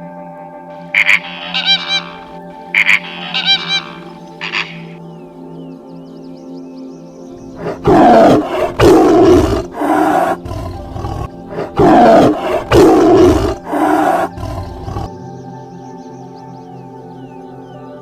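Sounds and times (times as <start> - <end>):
background music: 0.0 - 18.0
big cat roaring: 7.4 - 15.1.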